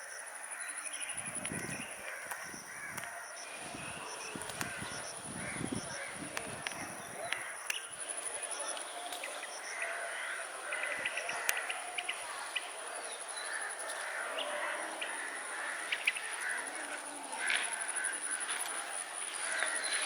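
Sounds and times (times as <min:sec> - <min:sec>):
birds chirping and calling: 0:09.1 - 0:17.5.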